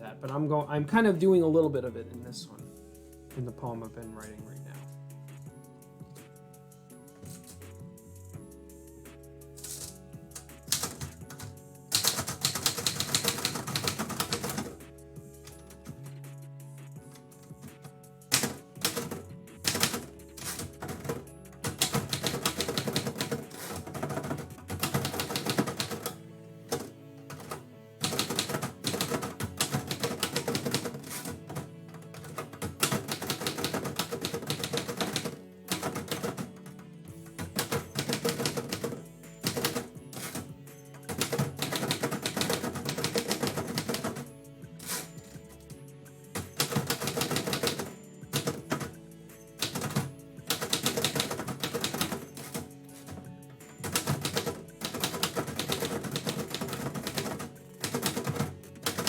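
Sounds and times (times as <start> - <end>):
background music: 0.0 - 59.0
typewriter keys striking: 9.6 - 14.8, 17.1 - 45.4, 46.3 - 59.0.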